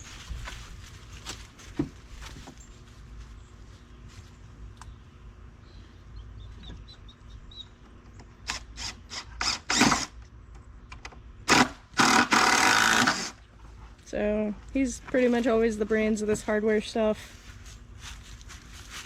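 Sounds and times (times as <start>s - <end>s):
cordless drill driving screws: 8.5s - 10.2s, 11.5s - 13.4s.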